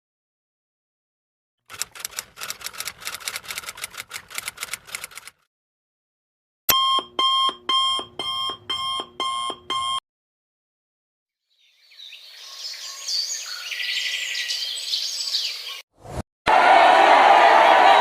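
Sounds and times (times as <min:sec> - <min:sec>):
rapid sharp clicks: 0:01.7 - 0:05.4.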